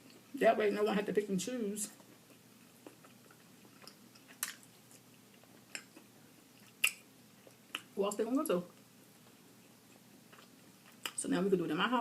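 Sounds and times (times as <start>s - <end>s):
wet chewing mouth clicks: 2.0s - 7.9s, 8.8s - 11.2s.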